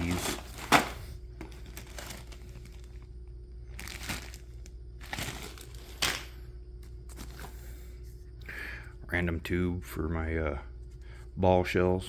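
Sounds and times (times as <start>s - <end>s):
plastic packaging crinkling: 0.0s - 6.4s.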